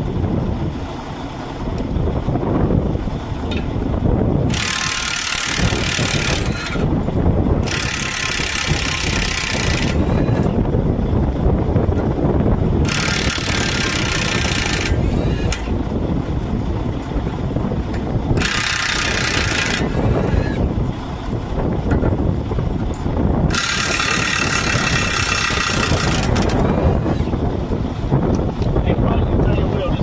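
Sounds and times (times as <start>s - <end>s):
air impact wrench spinning: 4.4s - 7.0s, 7.6s - 10.6s, 12.8s - 16.6s, 18.3s - 20.7s, 23.4s - 27.4s.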